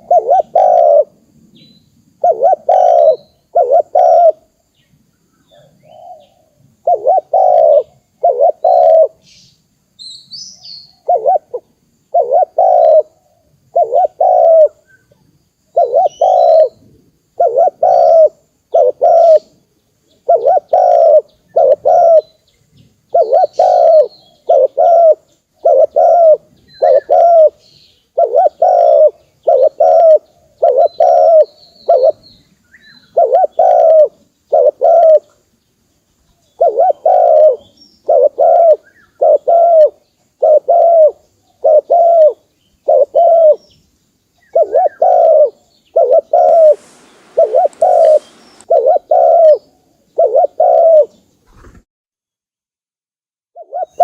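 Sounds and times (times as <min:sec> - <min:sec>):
dove cooing: 0:00.0 - 0:01.2, 0:02.2 - 0:04.5, 0:05.5 - 0:09.2, 0:10.9 - 0:14.8, 0:15.7 - 0:19.5, 0:20.2 - 0:22.3, 0:23.1 - 0:27.6, 0:28.2 - 0:32.2, 0:33.0 - 0:35.4, 0:36.6 - 0:43.6, 0:44.4 - 0:51.8, 0:53.6 - 0:54.0
faint high bird chirps: 0:00.0 - 0:51.8, 0:53.6 - 0:54.0.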